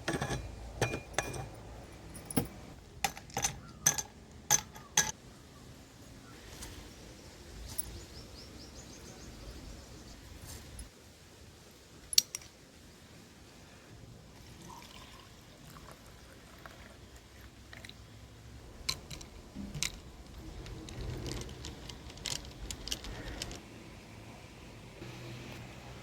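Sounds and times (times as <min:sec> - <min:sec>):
glass clinks and knocks: 0:00.0 - 0:05.1
liquid being poured: 0:14.4 - 0:18.0.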